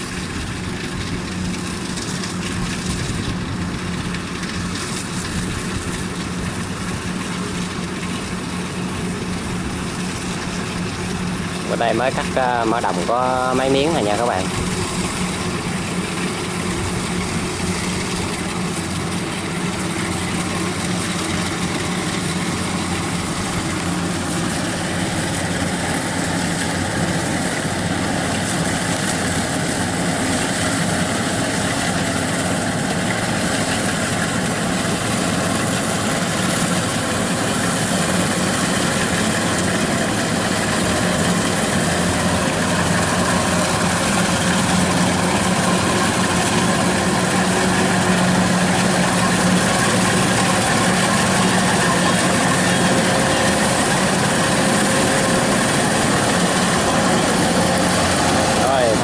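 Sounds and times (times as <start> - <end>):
combine harvester engine drone: 0.0 - 59.0.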